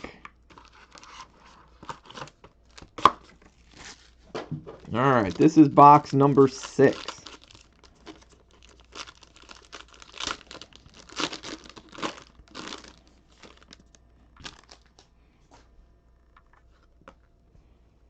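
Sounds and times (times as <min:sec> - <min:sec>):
plastic wrapping crinkling and tearing: 0:00.4 - 0:04.2, 0:04.8 - 0:15.0.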